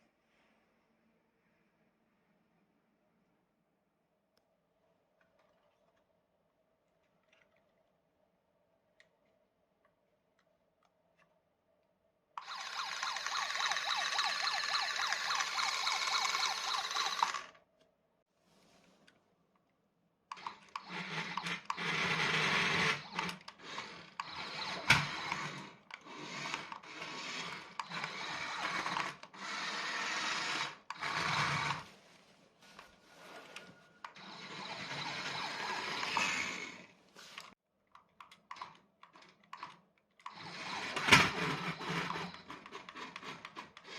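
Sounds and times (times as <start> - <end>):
toy car electric motor whirring: 12.4 - 17.6, 20.3 - 31.9, 34.0 - 37.6, 39.6 - 43.9.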